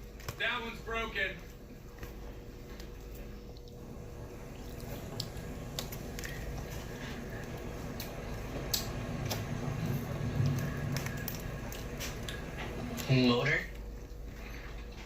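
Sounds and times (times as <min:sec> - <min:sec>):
low steady hum: 0:00.0 - 0:15.0
shells cracking wet squishes: 0:04.6 - 0:06.8.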